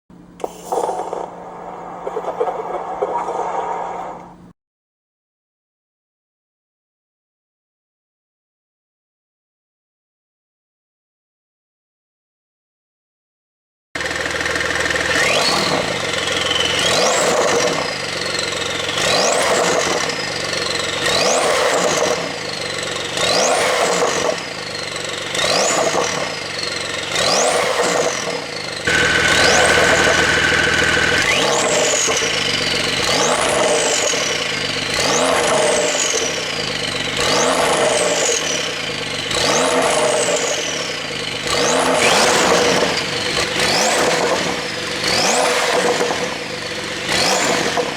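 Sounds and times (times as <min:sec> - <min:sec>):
car engine revving: 0:14.0 - 0:47.9.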